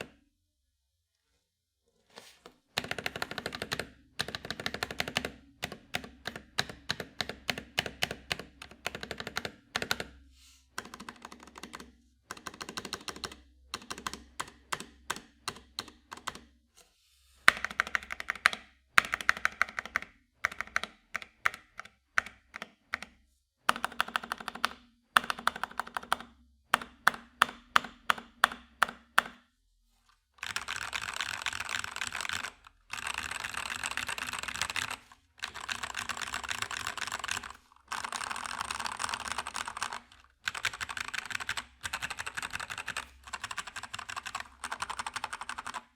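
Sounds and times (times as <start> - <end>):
mechanical keyboard typing: 2.8 - 10.2, 10.8 - 16.5, 17.5 - 29.4, 30.4 - 45.9.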